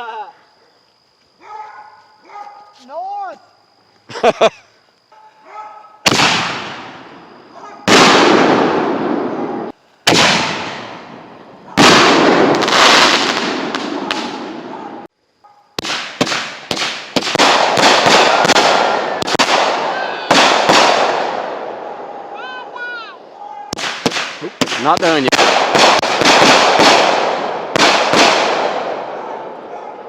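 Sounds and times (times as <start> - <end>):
heavy firework booms: 6.0 - 7.3, 7.9 - 15.1, 15.8 - 22.1, 23.7 - 29.6
firework bangs and crackles: 6.0 - 15.1, 15.8 - 22.1, 23.7 - 29.7
rising firework whistles: 6.0 - 15.1, 15.8 - 29.5.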